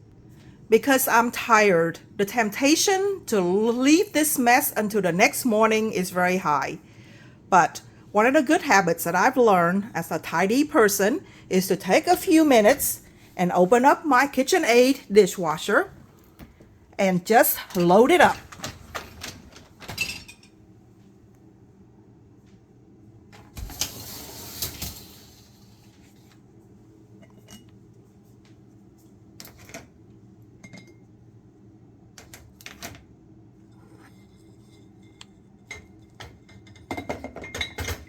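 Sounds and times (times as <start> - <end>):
faint steady hum: 0.0 - 38.0.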